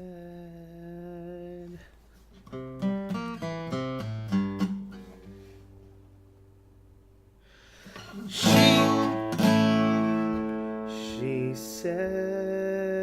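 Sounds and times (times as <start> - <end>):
acoustic guitar picked notes: 2.4 - 13.0
strummed guitar chord: 8.0 - 12.0.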